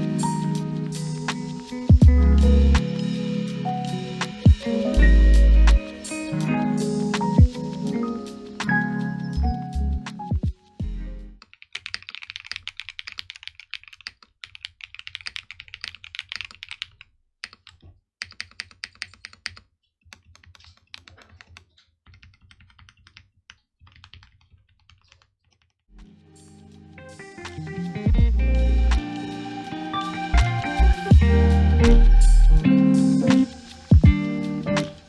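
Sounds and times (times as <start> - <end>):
mechanical keyboard typing: 11.5 - 25.6.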